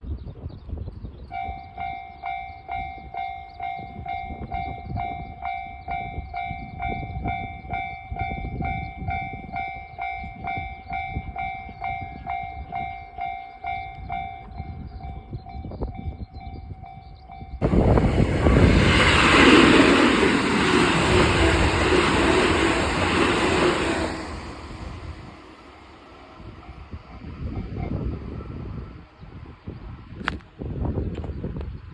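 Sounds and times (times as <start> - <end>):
train passing: 17.6 - 30.2.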